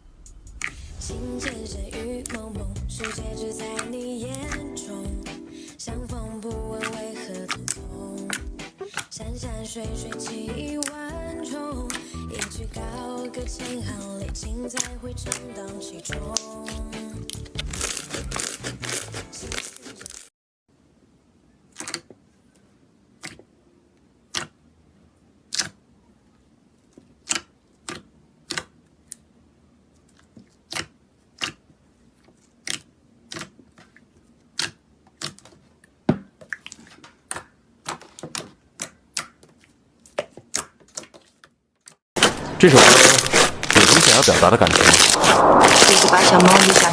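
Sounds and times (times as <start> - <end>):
music: 0.2 - 19.6.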